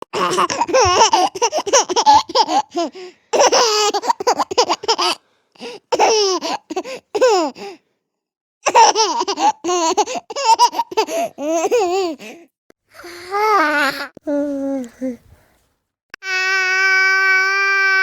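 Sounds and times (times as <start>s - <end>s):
baby laughing: 0.1s - 5.2s, 5.9s - 7.6s, 8.6s - 12.3s
baby breathing: 0.4s - 4.2s, 5.1s - 7.8s, 9.4s - 11.5s, 12.1s - 13.4s.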